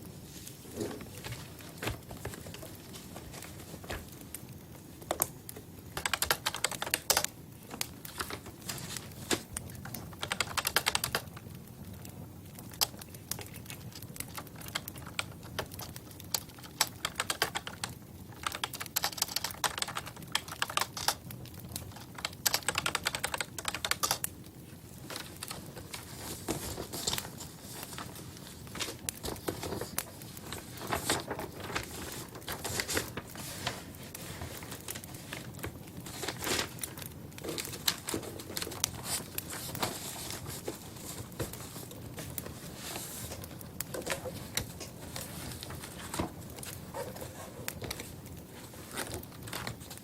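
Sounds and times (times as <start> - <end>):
rapid light clicks and taps: 5.0 - 11.5.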